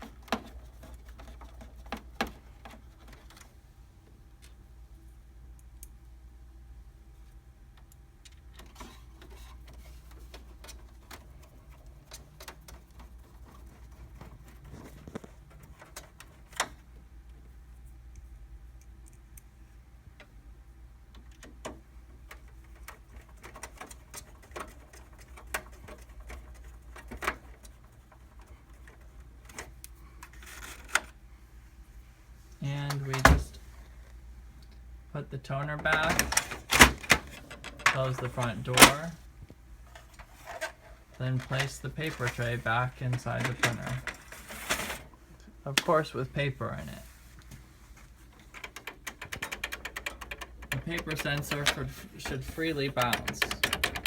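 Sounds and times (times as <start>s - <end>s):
hand tools clicking on plastic and metal: 21.1s - 31.1s, 48.4s - 54.0s
rustle of handling: 35.8s - 48.6s.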